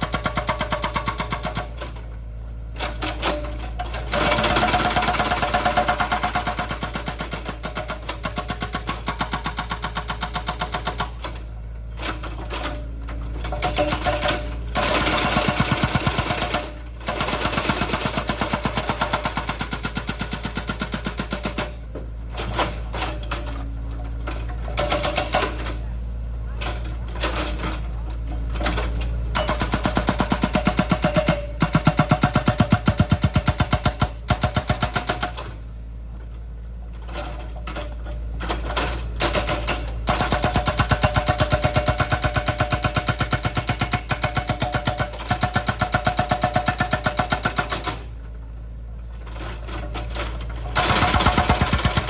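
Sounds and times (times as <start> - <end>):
rapid mechanical clatter: 0.0 - 1.8, 12.0 - 21.8, 28.6 - 35.6, 37.1 - 48.2, 49.1 - 52.0.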